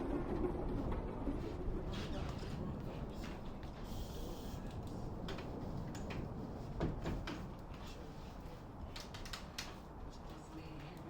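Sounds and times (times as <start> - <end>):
low background hum: 0.0 - 11.0.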